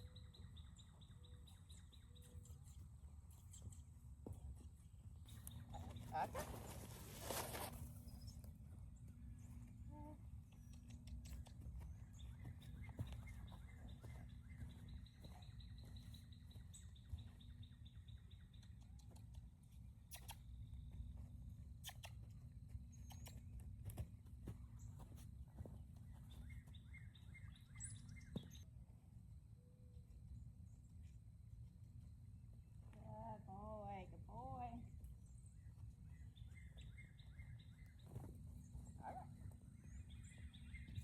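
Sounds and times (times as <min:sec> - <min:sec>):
bird chirps: 0:00.0 - 0:03.8, 0:09.3 - 0:19.3, 0:26.0 - 0:28.7, 0:35.2 - 0:41.0.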